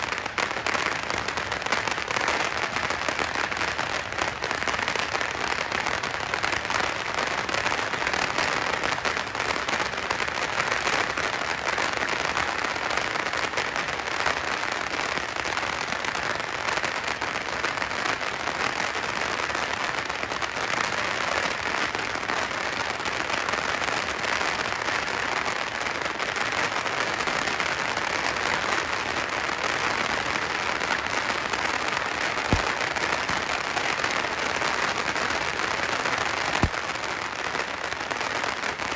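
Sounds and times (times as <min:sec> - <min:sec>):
firecrackers crackling: 0:00.0 - 0:38.9.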